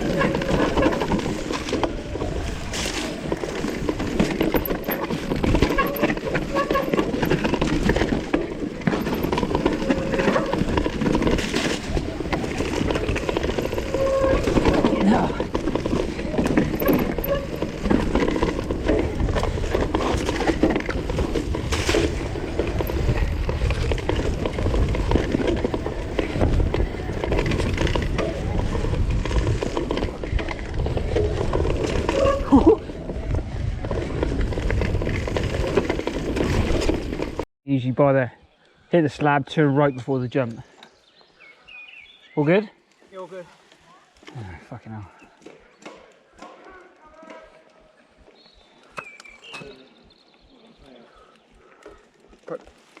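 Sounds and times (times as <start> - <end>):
bike rattling: 0.0 - 37.5, 43.6 - 53.0
bike tyres rumbling: 0.0 - 37.5, 39.2 - 53.0
wind noise on microphone: 15.4 - 37.4.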